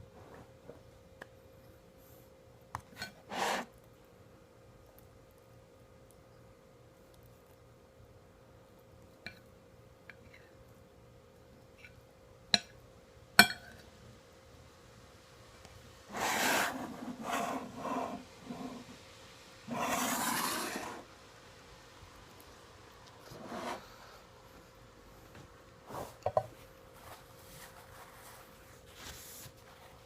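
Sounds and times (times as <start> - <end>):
rough scraping or rustling: 16.1 - 19.0, 19.7 - 21.1, 23.2 - 23.9.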